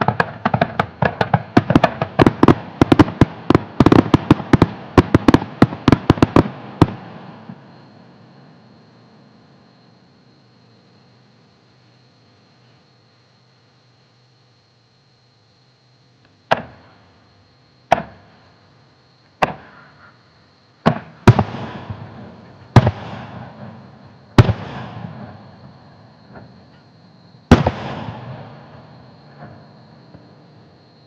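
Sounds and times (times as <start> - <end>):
firework shells bursting: 0.0 - 7.6
hissing crackling firework tails: 0.0 - 8.4, 20.8 - 30.4.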